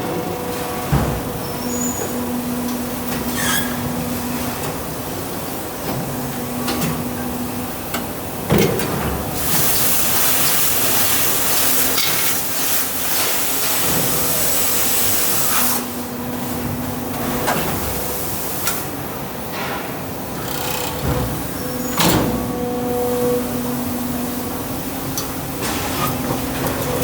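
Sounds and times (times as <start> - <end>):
machine hum: 13.6 - 27.0.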